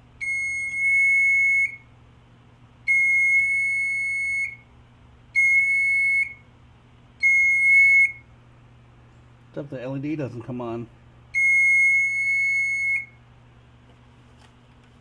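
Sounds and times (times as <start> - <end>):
smoke alarm horn blasts: 0.2 - 1.9, 2.8 - 4.7, 5.3 - 6.4, 7.2 - 8.3, 11.3 - 13.2.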